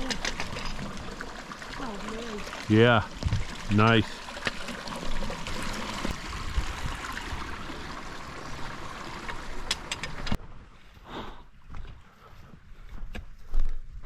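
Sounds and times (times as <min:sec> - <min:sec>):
creek running over rocks: 0:00.0 - 0:10.4.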